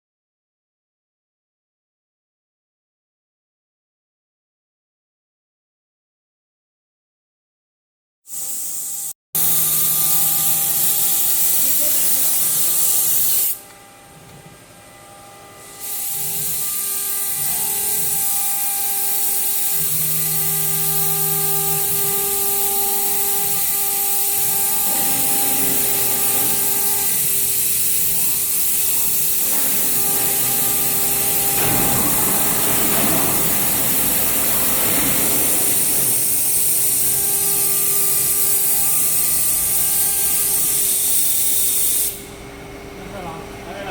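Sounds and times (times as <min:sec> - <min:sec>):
bit cutting: 0:08.3 - 0:13.8, 0:15.6 - 0:42.3
motor tones: 0:08.3 - 0:43.9.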